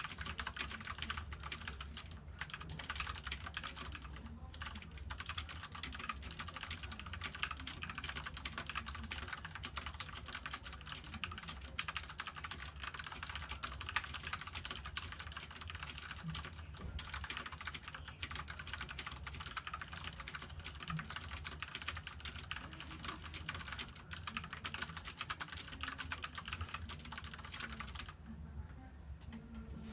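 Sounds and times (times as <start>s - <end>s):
mechanical keyboard typing: 0.0s - 28.2s.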